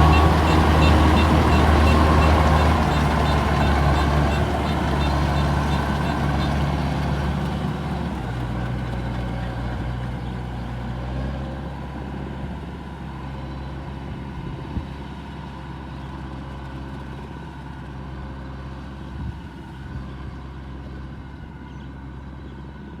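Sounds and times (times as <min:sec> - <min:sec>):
harvester diesel engine running: 0:00.0 - 0:14.6.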